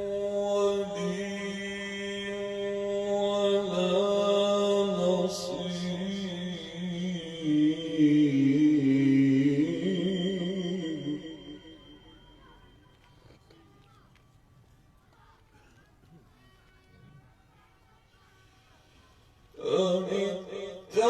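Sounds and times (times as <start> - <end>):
man chanting melodically: 0.0 - 12.4, 19.6 - 21.0.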